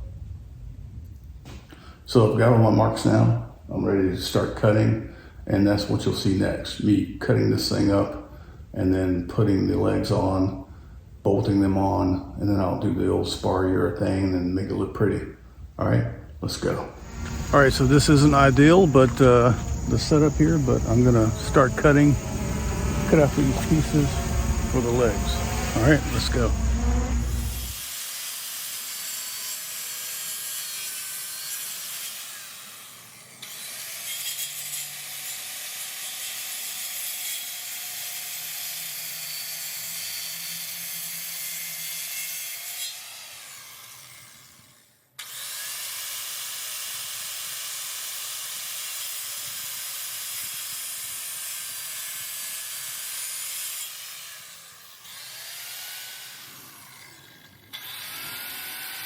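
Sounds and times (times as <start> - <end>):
power saw cutting wood: 16.9 - 59.0.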